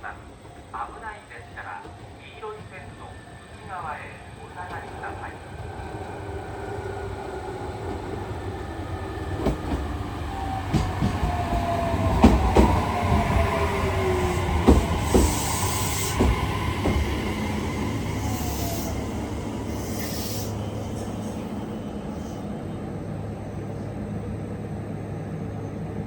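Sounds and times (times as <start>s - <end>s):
electric train whine: 0.1s - 26.0s
train wheels clacking: 10.5s - 17.3s
air hiss: 19.7s - 21.4s.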